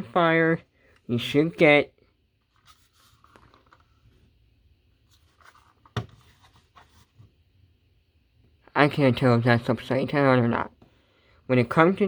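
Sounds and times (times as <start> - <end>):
scraping and rustling on a desk: 5.0 - 7.4.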